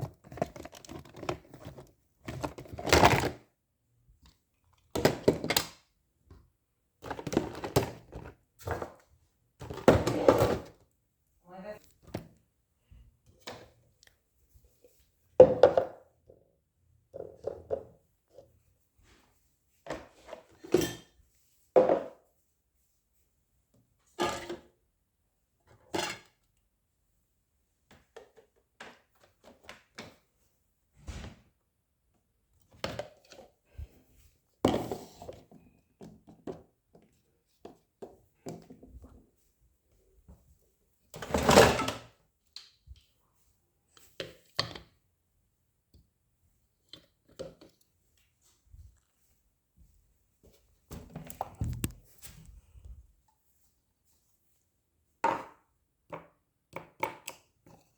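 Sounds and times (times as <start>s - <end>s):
objects knocking and thunking: 0.0s - 3.4s, 15.4s - 16.4s, 17.1s - 18.5s, 50.9s - 52.2s.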